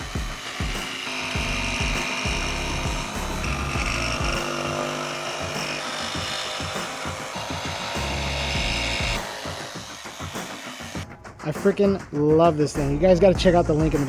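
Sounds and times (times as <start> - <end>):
jigsaw cutting: 0.0 - 11.0.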